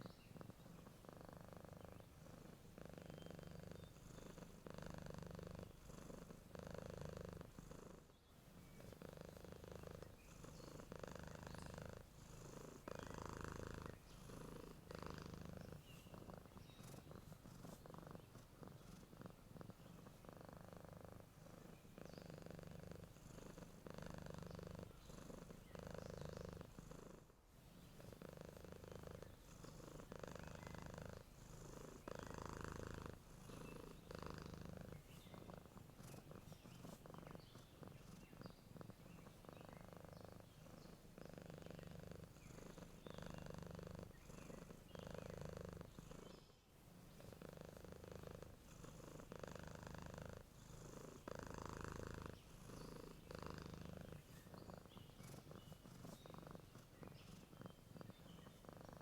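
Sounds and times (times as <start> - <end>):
cat purring: 0.0 - 59.0.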